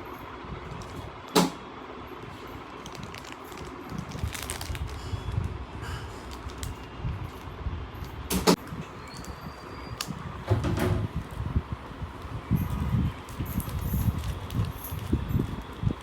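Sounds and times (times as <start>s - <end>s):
candy wrapper rustling and crackling: 2.2s - 7.5s, 12.2s - 16.0s
packaging snapping: 2.8s - 5.1s.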